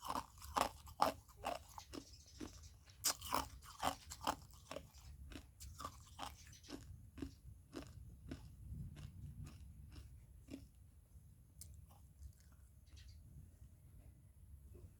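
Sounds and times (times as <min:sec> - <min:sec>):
ice cubes crunched in mouth: 0:00.0 - 0:05.0.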